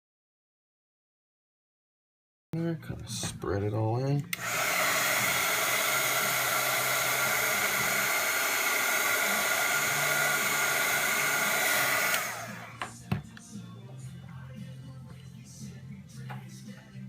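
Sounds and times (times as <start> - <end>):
hot-air blower running: 4.3 - 13.0.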